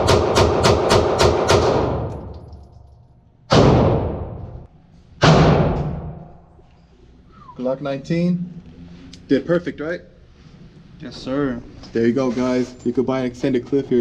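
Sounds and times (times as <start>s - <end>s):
rapid pistol shots: 0.0s - 2.3s, 3.5s - 4.4s
single gunshots with echo: 3.5s - 4.6s.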